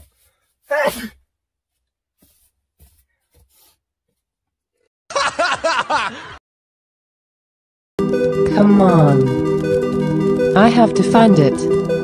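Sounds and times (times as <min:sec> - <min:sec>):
person laughing: 0:05.1 - 0:06.4.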